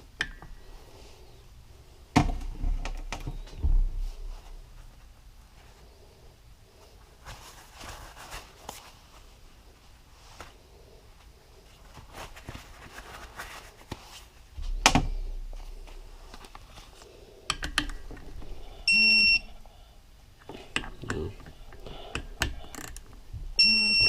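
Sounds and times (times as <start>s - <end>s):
high electronic beep: 18.9s - 19.5s, 23.6s - 24.0s.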